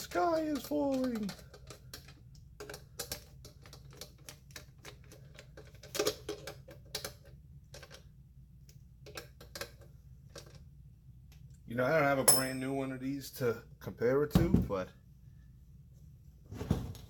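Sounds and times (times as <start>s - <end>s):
small parts clicking and clinking: 0.0s - 8.0s.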